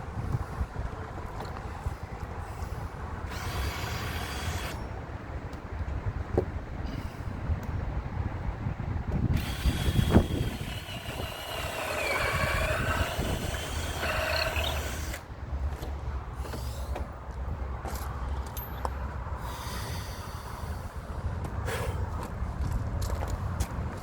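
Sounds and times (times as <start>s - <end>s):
power drill whining: 2.6s - 4.9s, 9.3s - 15.3s.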